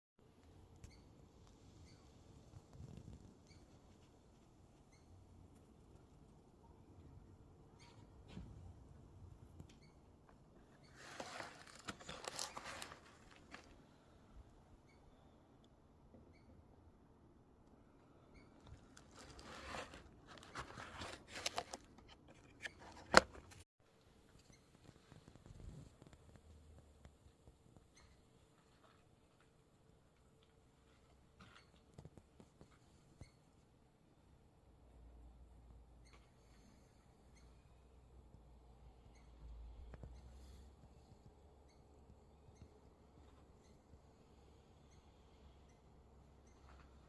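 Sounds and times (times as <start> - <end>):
rustling and scraping: 10.6 - 13.9, 18.6 - 23.6
faint high chirps: 16.2 - 16.7, 38.9 - 40.6.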